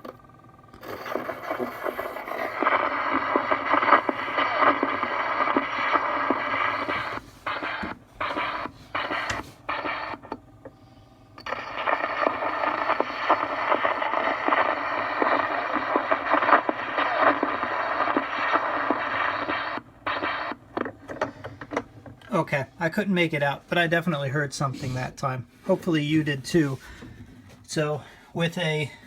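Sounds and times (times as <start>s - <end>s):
scratchy phonograph surface noise: 0.8s - 10.4s, 11.5s - 21.9s.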